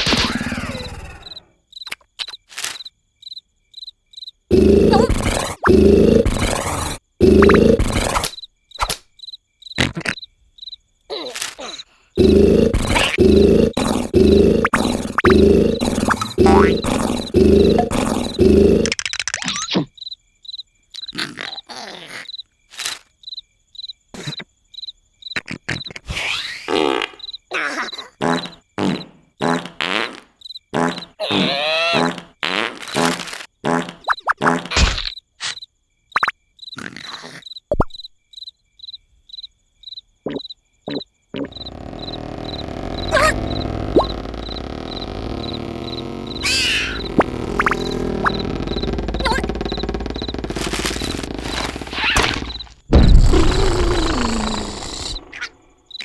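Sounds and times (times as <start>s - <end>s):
cricket chirping: 0.0s - 29.7s, 30.4s - 56.0s
comic sound effects: 4.5s - 8.3s, 12.2s - 19.7s, 41.4s - 55.5s
short noisy bursts: 4.5s - 8.3s, 12.2s - 18.9s, 41.4s - 55.4s
pulsing snore-like rasp: 4.5s - 8.4s, 12.2s - 18.9s, 41.5s - 55.4s
steady rumbling noise: 12.2s - 18.9s, 41.5s - 55.2s.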